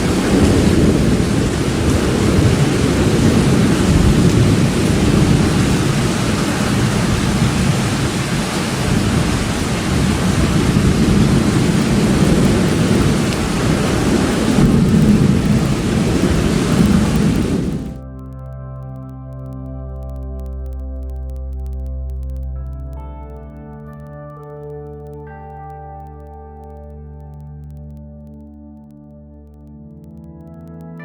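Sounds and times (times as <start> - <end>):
rolling thunder: 0.0 - 18.0
heavy rain: 0.0 - 25.3.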